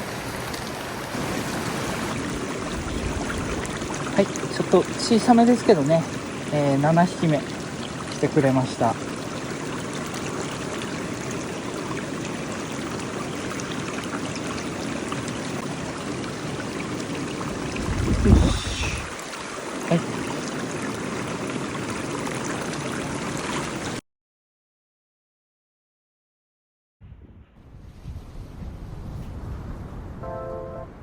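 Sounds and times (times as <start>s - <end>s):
stream water running over rocks: 0.0s - 24.0s
low rumble on microphone: 2.2s - 4.1s, 17.5s - 19.1s, 27.0s - 31.0s.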